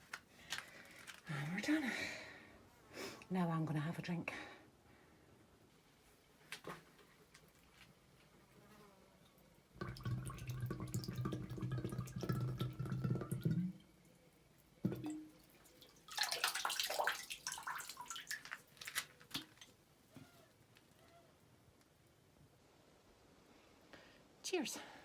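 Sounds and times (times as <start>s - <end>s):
water pouring: 9.8s - 14.0s, 14.8s - 19.8s
water splashing and dripping: 9.8s - 14.0s, 14.8s - 19.8s.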